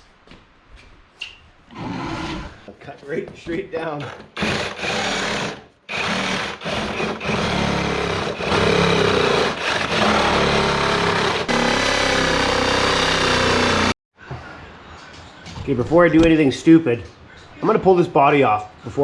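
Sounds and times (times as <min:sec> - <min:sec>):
power tool cutting plastic: 0:04.1 - 0:14.0.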